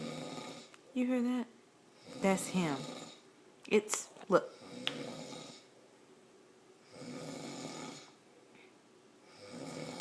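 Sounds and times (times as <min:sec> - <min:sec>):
man snoring: 0:00.0 - 0:00.7, 0:02.0 - 0:03.2, 0:04.6 - 0:05.7, 0:06.8 - 0:08.2, 0:09.3 - 0:10.0.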